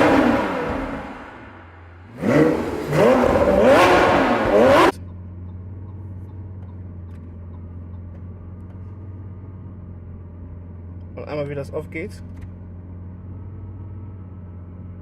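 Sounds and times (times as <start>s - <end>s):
sports car engine revving: 0.0s - 7.6s
car engine idling: 0.0s - 15.0s.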